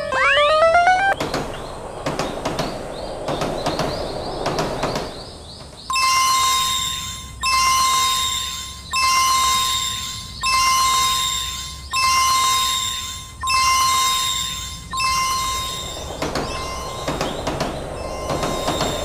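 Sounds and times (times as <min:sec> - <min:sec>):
sharp knocks and rattles: 0:01.2 - 0:06.0, 0:15.0 - 0:19.0
warning bell strikes: 0:15.0 - 0:19.0.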